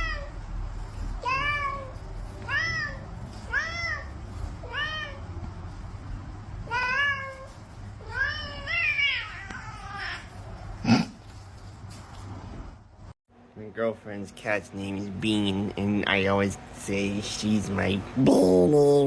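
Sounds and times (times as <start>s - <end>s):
cat meowing: 0.0s - 0.4s, 1.2s - 5.2s, 6.6s - 10.5s.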